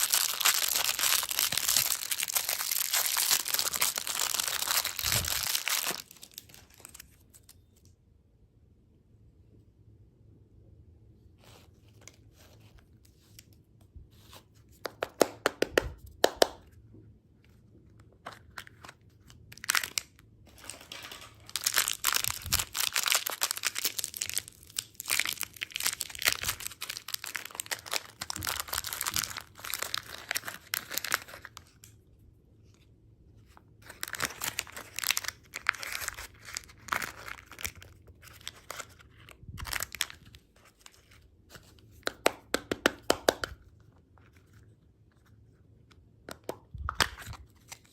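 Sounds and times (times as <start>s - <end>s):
candy wrapper crinkling: 0.0s - 7.8s, 18.2s - 32.1s, 33.5s - 45.4s.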